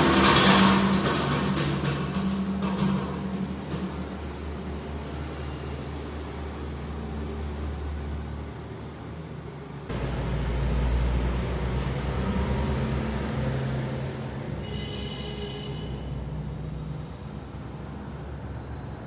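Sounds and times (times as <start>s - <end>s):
ceiling fan humming: 9.9s - 14.2s.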